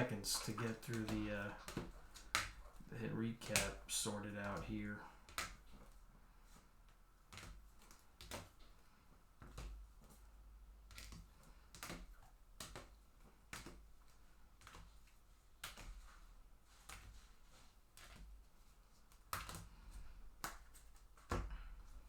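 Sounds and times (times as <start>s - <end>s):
trading cards tapping and clicking: 0.0s - 6.0s, 7.3s - 8.8s, 9.4s - 10.2s, 10.8s - 17.3s.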